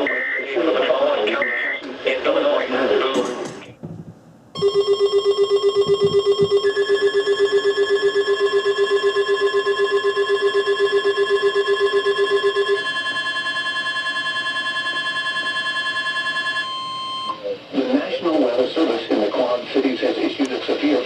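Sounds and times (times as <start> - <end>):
fast beeping: 4.6 - 17.4
steady high alarm tones: 4.6 - 17.5.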